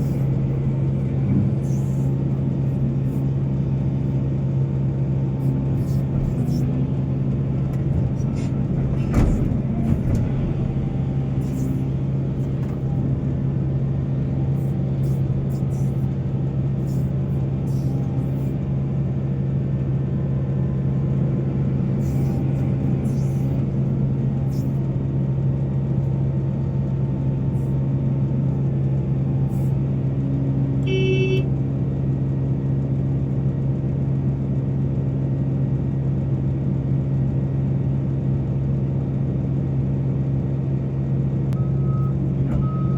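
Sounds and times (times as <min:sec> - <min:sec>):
heavy diesel engine running: 0:00.0 - 0:42.9
short beep: 0:41.6 - 0:42.9.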